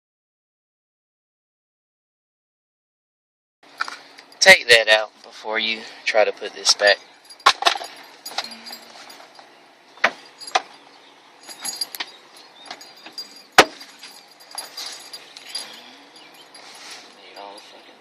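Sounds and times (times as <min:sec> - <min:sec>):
door handle parts clicking and clinking: 0:07.3 - 0:10.8, 0:11.4 - 0:16.6.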